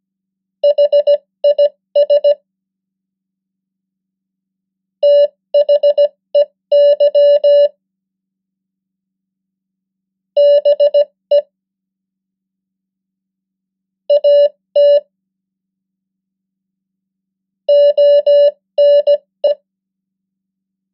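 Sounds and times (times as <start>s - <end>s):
morse code beeps: 0.6s - 2.4s, 5.0s - 7.7s, 10.4s - 11.4s, 14.1s - 15.0s, 17.7s - 19.6s.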